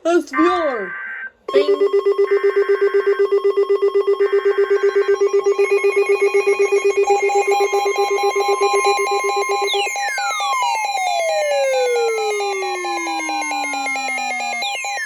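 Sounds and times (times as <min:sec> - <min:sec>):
low pulsing alert beep: 0:01.5 - 0:09.6
higher pulsing beep: 0:01.5 - 0:15.0
falling electronic sweeps: 0:04.2 - 0:15.0.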